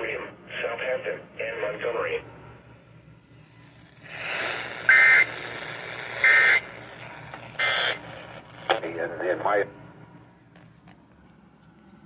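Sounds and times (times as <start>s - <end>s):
radio hiss: 0.0s - 2.3s, 4.0s - 9.7s
buzzing digital data tones: 3.8s - 8.8s.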